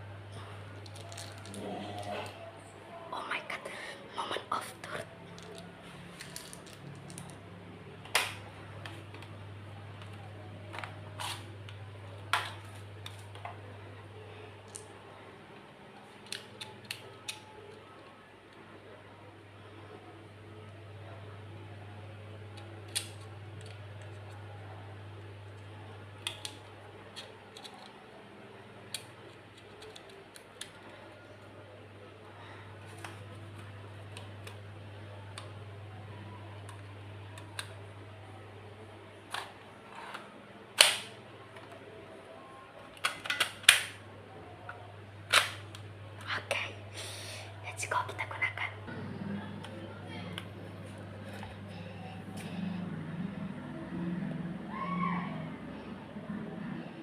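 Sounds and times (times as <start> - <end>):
pistol parts clicking: 40.8 - 41.1, 43.0 - 44.0
steady low hum: 44.0 - 57.0.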